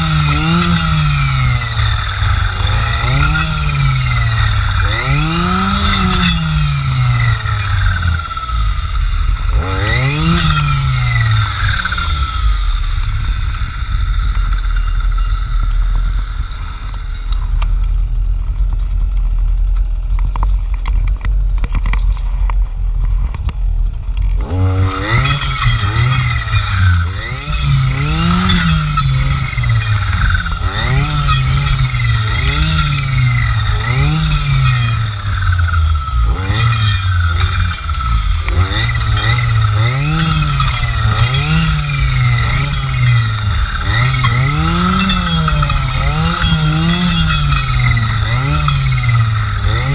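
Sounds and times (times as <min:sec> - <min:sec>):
clearing saw engine revving: 0:00.0 - 0:12.8, 0:24.4 - 0:49.9
saw blade high whine: 0:00.0 - 0:17.2, 0:24.4 - 0:49.9.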